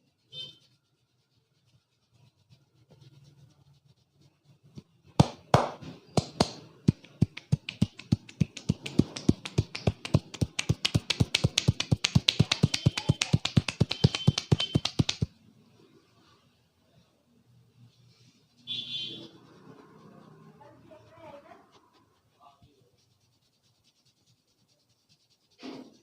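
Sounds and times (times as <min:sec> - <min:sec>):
hands striking head rhythmically: 0:05.2 - 0:15.3.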